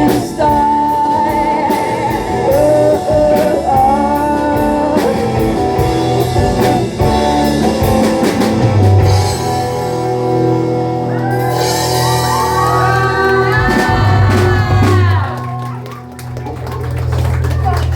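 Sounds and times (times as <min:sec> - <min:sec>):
live rock band playing: 0:00.0 - 0:17.9
drum hits: 0:13.5 - 0:15.2.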